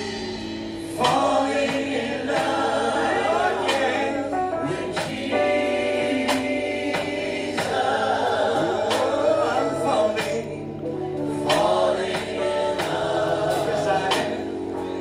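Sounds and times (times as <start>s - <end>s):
drum or cymbal hits: 0.0s - 4.1s
choir singing held notes: 0.0s - 15.0s
instrumental backing: 0.0s - 15.0s.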